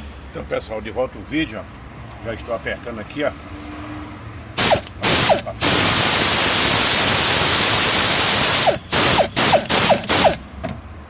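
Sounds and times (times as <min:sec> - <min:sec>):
pneumatic wrench: 0:04.6 - 0:10.4.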